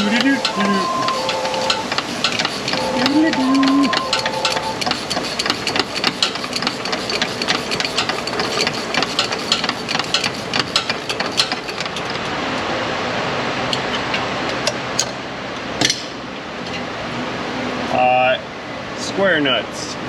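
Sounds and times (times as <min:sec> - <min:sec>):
hand tools clicking on metal: 0:00.0 - 0:12.3
steady background hum: 0:00.0 - 0:20.0.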